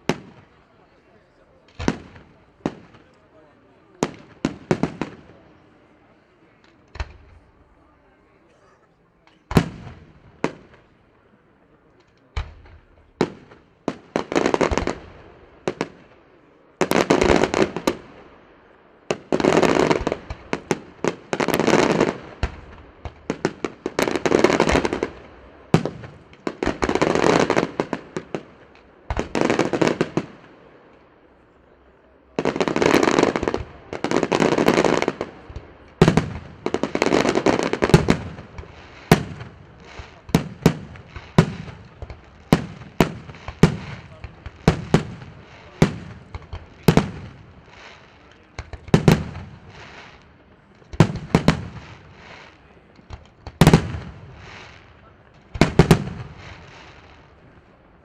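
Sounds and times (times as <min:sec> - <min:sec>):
firework shells bursting and crackling: 0:19.1 - 0:31.0, 0:32.4 - 0:57.8.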